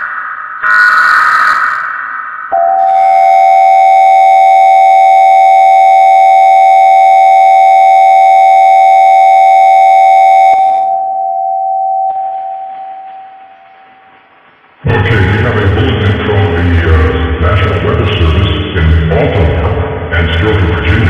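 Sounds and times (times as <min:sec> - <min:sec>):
electronic alert tone: 0:02.6 - 0:04.8.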